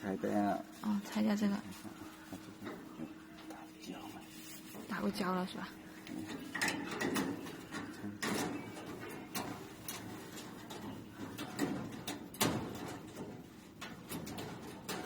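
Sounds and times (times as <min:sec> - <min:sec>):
clicks and knocks of metal parts: 0:06.0 - 0:15.0.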